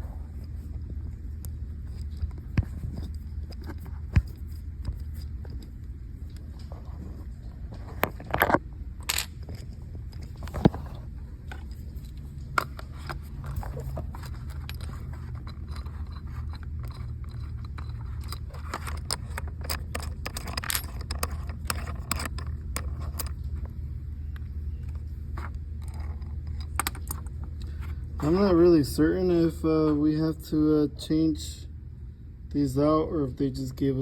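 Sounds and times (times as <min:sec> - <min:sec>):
steady low hum: 0:00.0 - 0:34.0
plastic parts scraping: 0:06.5 - 0:23.6, 0:24.8 - 0:28.4
parts clicking: 0:07.8 - 0:23.7, 0:24.3 - 0:28.5.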